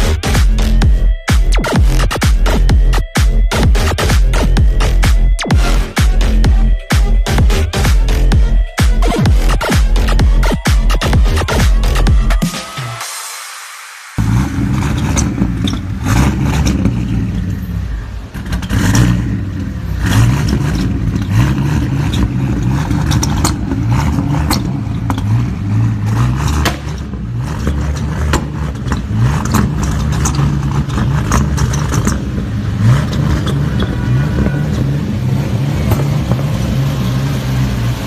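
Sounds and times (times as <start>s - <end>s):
car engine revving: 0.0s - 38.0s
exhaust pops and cracks: 14.2s - 17.6s, 18.2s - 34.9s.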